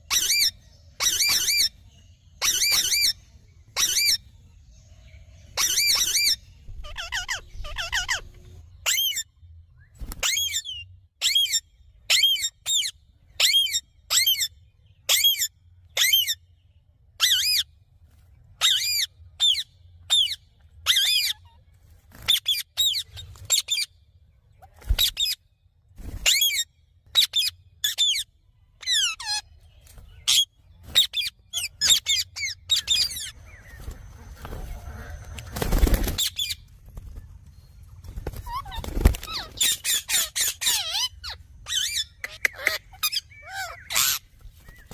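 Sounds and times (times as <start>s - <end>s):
parakeet high-pitched calls: 0.0s - 1.8s, 2.4s - 4.2s, 5.5s - 9.3s, 10.2s - 16.4s, 17.2s - 17.7s, 18.6s - 21.6s, 22.2s - 23.9s, 26.2s - 29.5s, 30.2s - 34.2s, 36.1s - 36.6s, 38.3s - 44.3s.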